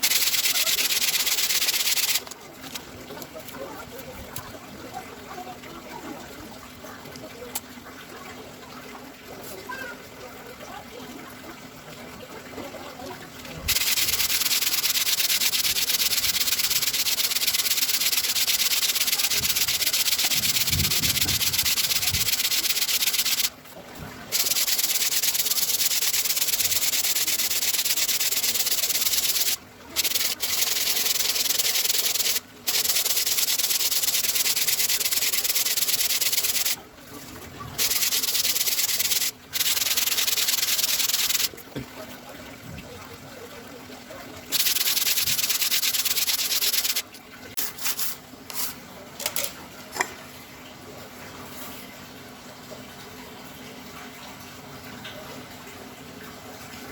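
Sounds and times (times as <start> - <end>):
coarse sanding of wood: 0.0 - 2.3, 13.7 - 23.5, 24.3 - 36.8, 37.8 - 41.5, 44.5 - 47.0.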